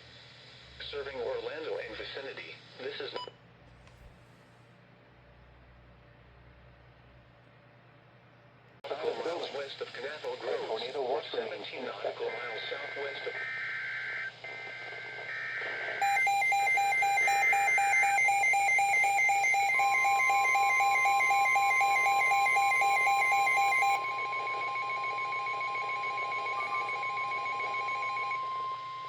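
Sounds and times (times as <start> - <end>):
rapid pulsing alarm beeps: 12.8 - 29.0
steady warning tone: 12.8 - 29.0.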